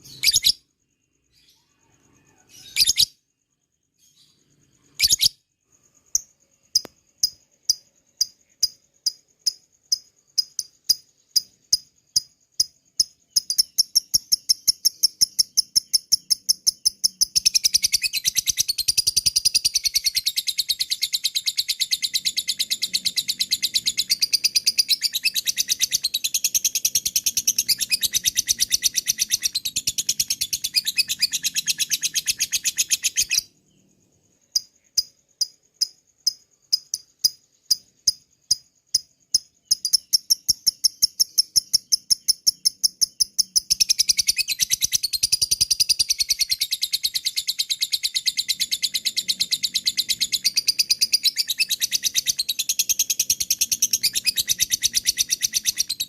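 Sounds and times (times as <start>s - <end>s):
lovebird chattering: 10.4s - 33.5s, 39.3s - 56.0s.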